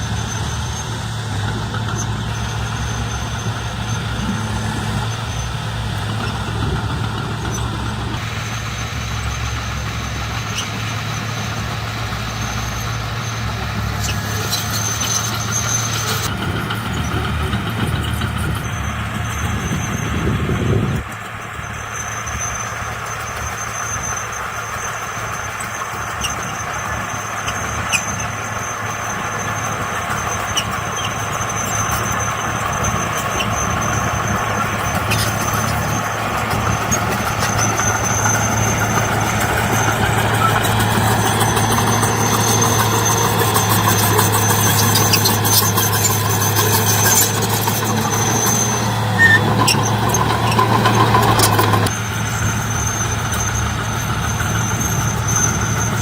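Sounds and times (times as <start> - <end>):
heavy diesel engine running: 0.0 - 56.0
high squeal: 0.0 - 56.0.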